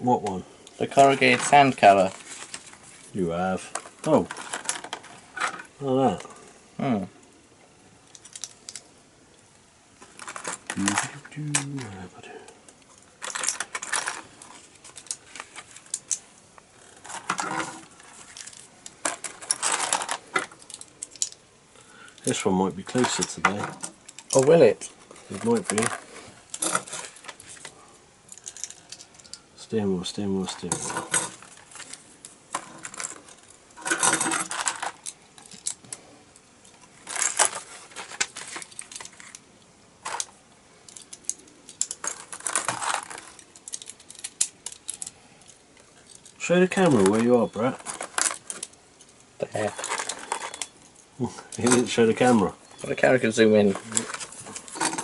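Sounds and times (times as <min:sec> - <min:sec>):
plastic bricks clicking and rattling: 0:16.9 - 0:21.4, 0:22.1 - 0:27.7, 0:30.6 - 0:36.0, 0:37.0 - 0:39.4, 0:40.0 - 0:48.8, 0:49.5 - 0:50.8.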